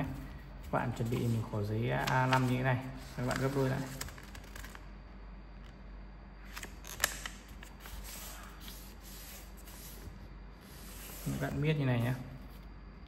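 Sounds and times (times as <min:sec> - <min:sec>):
paper rustling: 0:00.6 - 0:04.8.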